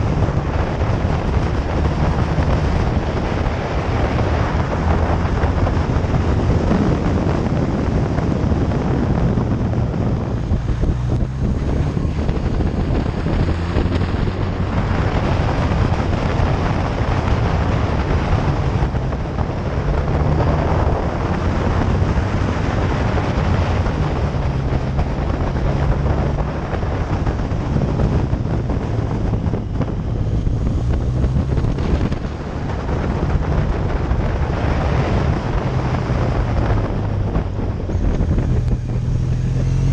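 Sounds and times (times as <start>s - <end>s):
motorcycle engine running: 0.0s - 39.9s
wind noise on microphone: 0.0s - 39.9s.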